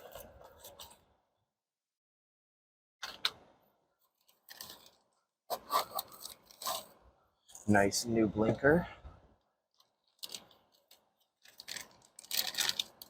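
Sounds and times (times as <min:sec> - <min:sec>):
cardboard tearing and crunching: 0:05.5 - 0:06.9, 0:11.4 - 0:13.0.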